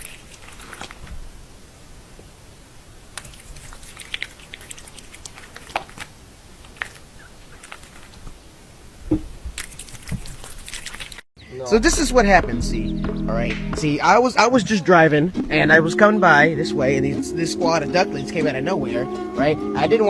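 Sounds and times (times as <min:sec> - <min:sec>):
animal chewing food: 0:00.0 - 0:01.1, 0:03.1 - 0:08.4, 0:09.2 - 0:11.3.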